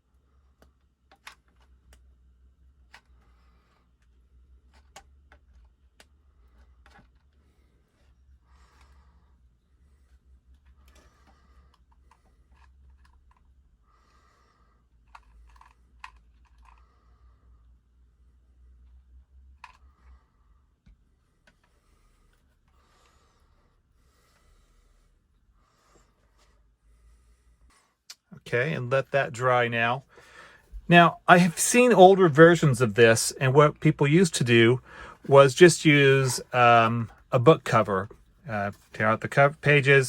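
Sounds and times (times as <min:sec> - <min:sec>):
low steady hum: 0:16.0 - 0:40.0.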